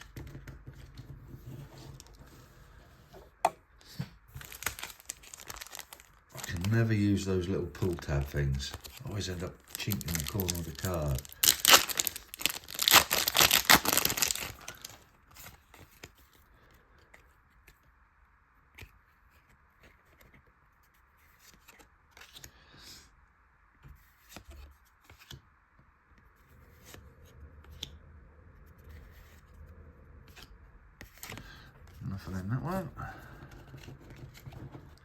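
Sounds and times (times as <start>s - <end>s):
cards clicking and rustling: 3.8s - 16.1s, 21.3s - 22.5s, 30.3s - 32.0s
foil wrapper tearing and crinkling: 4.4s - 6.9s, 7.8s - 15.0s.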